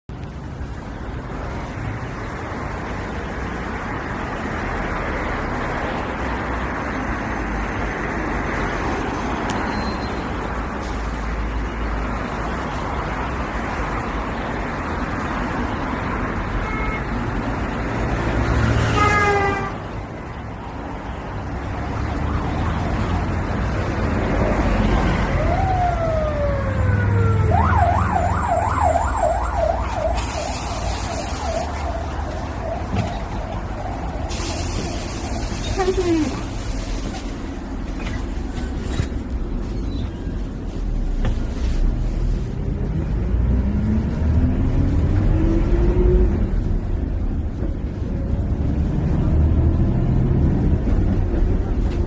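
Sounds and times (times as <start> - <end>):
bus engine and road noise: 0.1 - 52.0
ambulance siren: 21.9 - 23.5, 24.8 - 36.6.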